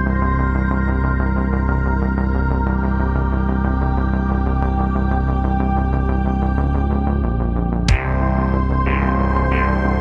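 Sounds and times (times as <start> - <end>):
synth music with pulsing beat: 5.2 - 10.0.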